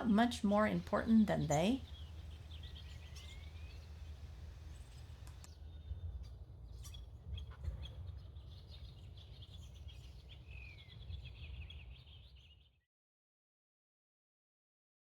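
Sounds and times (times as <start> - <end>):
birds chirping and calling: 0.0 - 5.5.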